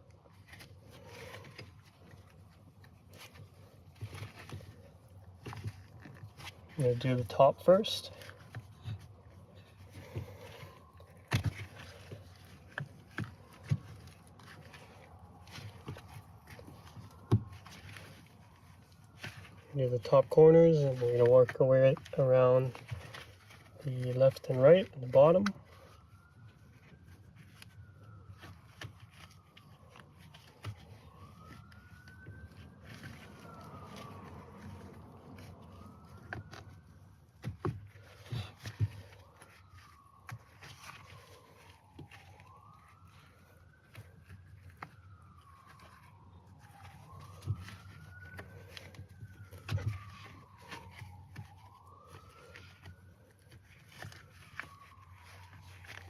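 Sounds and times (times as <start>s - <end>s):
distant siren wailing: 0.4s - 56.0s
small clicks and rubs of hands: 25.4s - 56.0s.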